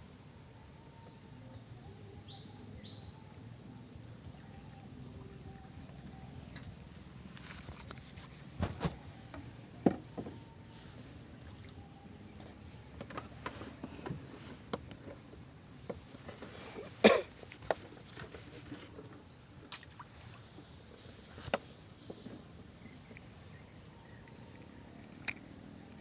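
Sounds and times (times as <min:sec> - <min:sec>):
faint outdoor background: 0:00.0 - 0:26.0.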